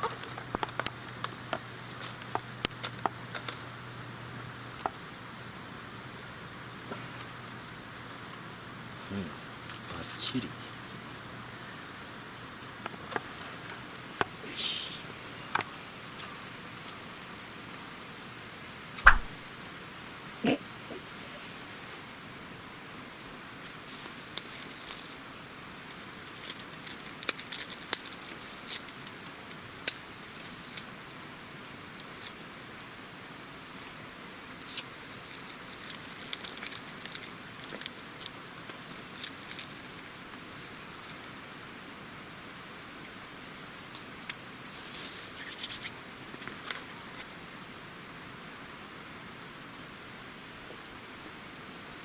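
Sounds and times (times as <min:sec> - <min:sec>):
light rain hissing: 0:03.5 - 0:19.3, 0:42.3 - 0:52.0.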